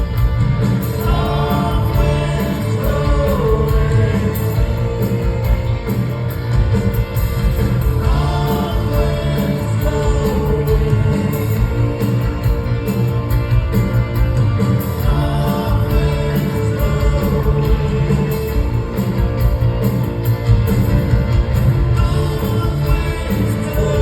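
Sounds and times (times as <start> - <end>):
bass: 0.0 - 24.0
live rock band: 0.0 - 24.0
person singing: 0.9 - 5.5, 7.9 - 12.2, 22.0 - 24.0.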